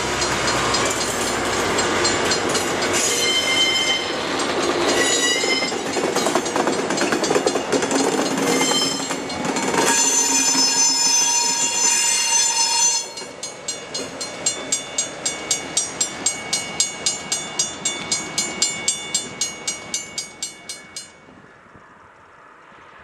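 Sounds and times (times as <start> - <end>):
crossing bell ringing rapidly: 0.0 - 21.3
train rumble: 0.0 - 23.0
train horn blast: 9.8 - 13.2.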